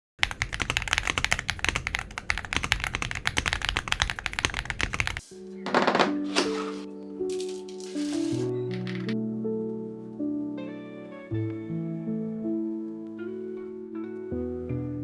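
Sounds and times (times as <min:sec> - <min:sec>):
mechanical keyboard typing: 0:00.2 - 0:05.2.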